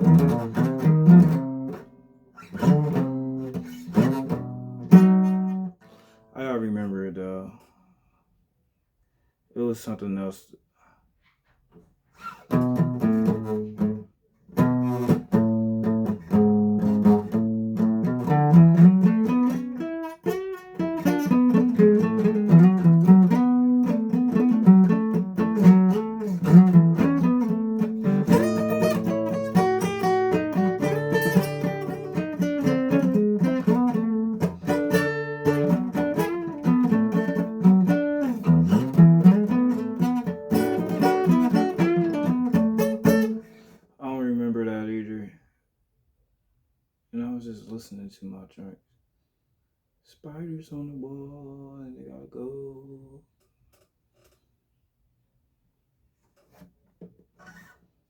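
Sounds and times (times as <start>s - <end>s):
acoustic guitar strumming chords: 0.0s - 7.0s, 12.3s - 43.8s.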